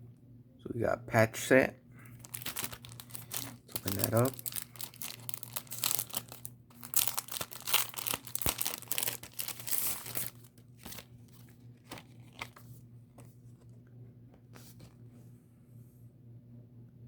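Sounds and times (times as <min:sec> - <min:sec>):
packaging crinkling and tearing: 0:02.1 - 0:12.7.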